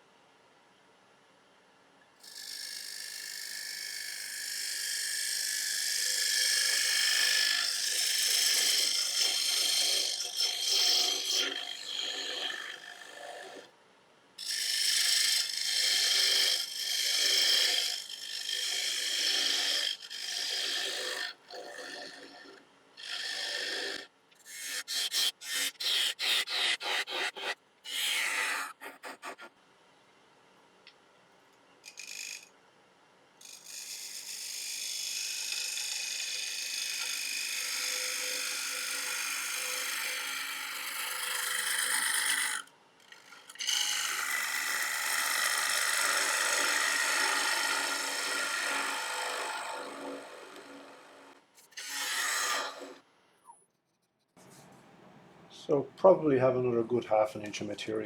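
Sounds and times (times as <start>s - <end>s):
bowl gouge cutting wood on lathe: 2.2s - 13.7s, 14.4s - 24.1s, 24.7s - 29.5s, 35.5s - 53.0s.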